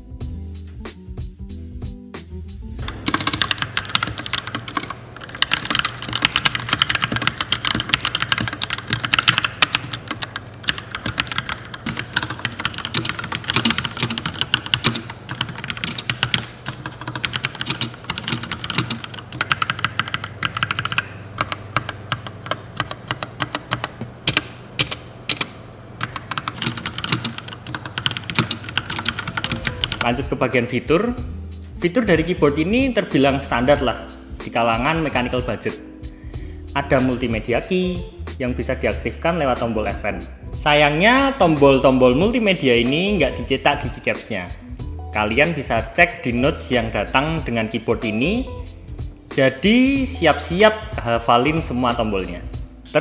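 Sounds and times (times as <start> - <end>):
mechanical keyboard typing: 2.8 - 30.2.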